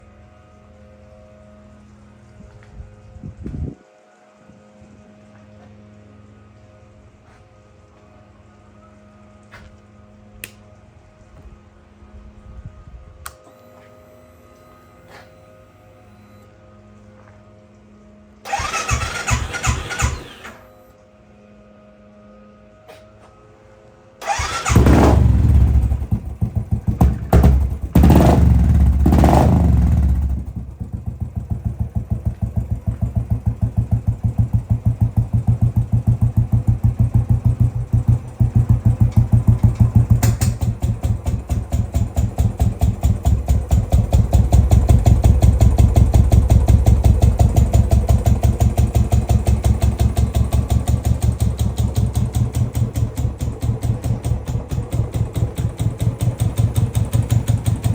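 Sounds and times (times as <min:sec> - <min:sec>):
motorcycle engine starting and idling: 0:18.4 - 0:20.8, 0:24.2 - 0:57.9.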